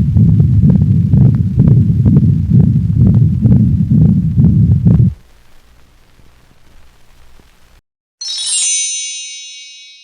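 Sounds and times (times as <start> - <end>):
stethoscope heart sounds: 0.0 - 5.3
bright ringing chime: 8.2 - 10.0.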